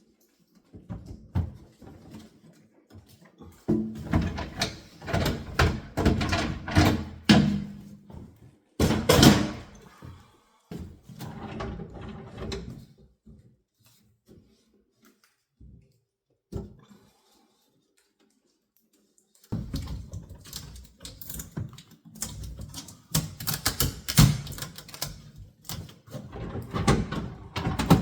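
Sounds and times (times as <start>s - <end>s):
door and drawer thuds: 8.8s - 9.8s
knocks and bumps of refrigerator: 8.8s - 9.8s.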